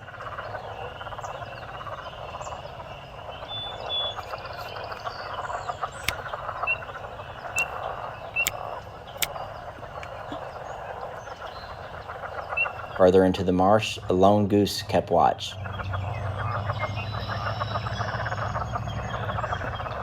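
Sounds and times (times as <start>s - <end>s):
chorus of frogs calling: 0.0s - 20.0s.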